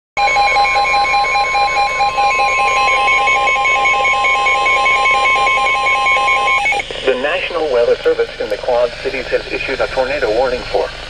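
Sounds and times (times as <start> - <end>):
pulsing beeps: 0.2 - 8.2.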